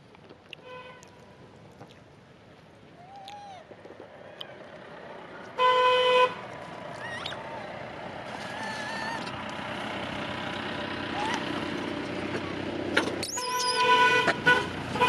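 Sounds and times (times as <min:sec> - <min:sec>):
traffic noise: 0:00.0 - 0:15.0
vehicle horn honking: 0:05.6 - 0:06.4, 0:13.4 - 0:15.0.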